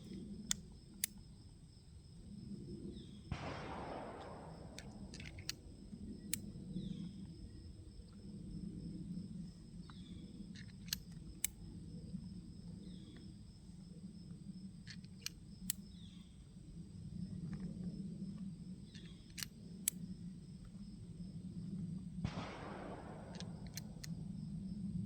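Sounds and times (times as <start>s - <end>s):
revolver cylinder clicking: 0.0s - 1.2s, 3.4s - 6.6s, 9.9s - 11.7s, 14.9s - 16.2s, 18.9s - 20.1s, 22.4s - 24.2s
revolver metallic clicks: 3.4s - 7.0s, 9.8s - 11.7s, 14.8s - 16.3s, 18.9s - 20.1s, 22.3s - 24.3s.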